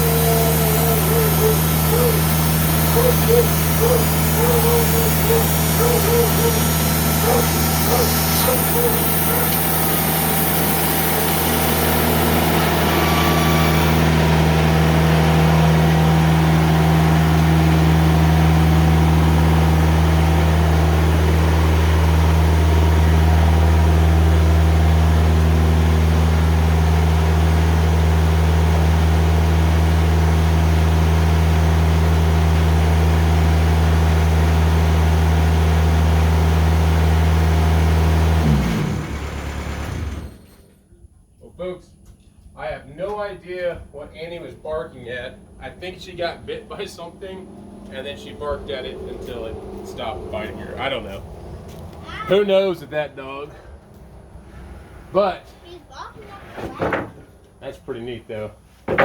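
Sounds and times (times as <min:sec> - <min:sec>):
high hiss: 0:00.0 - 0:14.2
sawmill diesel engine running: 0:00.0 - 0:40.8, 0:43.1 - 0:56.2, 0:56.8 - 0:59.0.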